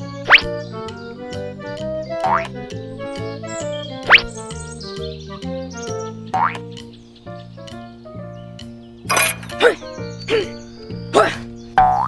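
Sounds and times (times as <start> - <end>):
cheerful music with regular beat: 0.0 - 9.2.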